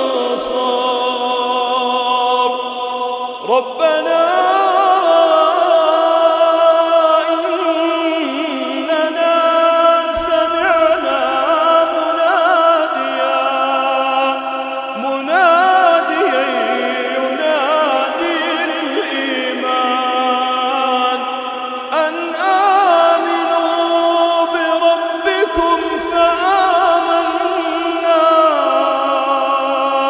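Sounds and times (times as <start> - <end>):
man chanting recitation: 0.0 - 30.0.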